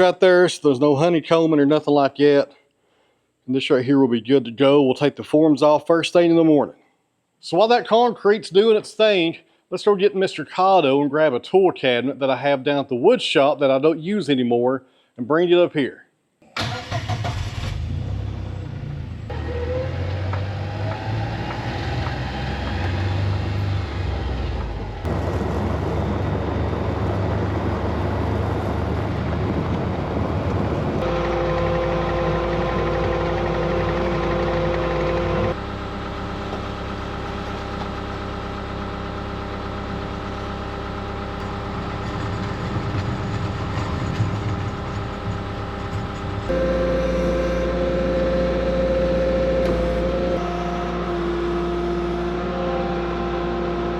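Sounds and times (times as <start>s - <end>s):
vehicle engine running: 17.8s - 53.9s
droning whine: 18.4s - 53.9s.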